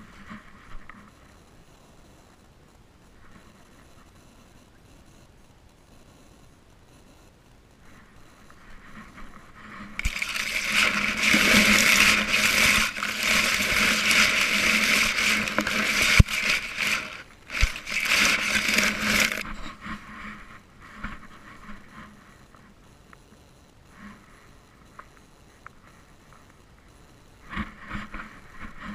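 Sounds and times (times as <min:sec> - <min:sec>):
scraping and rubbing on camera: 0:00.0 - 0:01.4, 0:07.8 - 0:22.7, 0:27.4 - 0:28.9.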